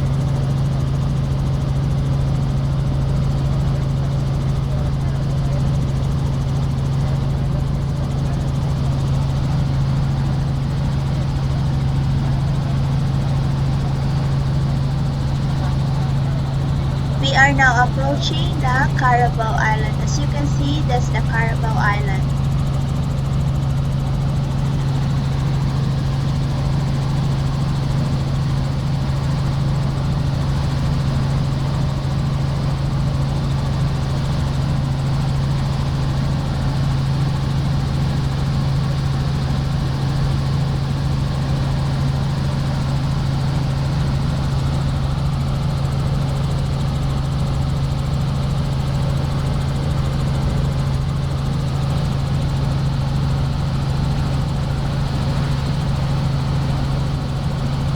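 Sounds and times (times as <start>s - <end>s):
helicopter engine and rotors: 14.1s - 26.8s, 44.2s - 57.9s.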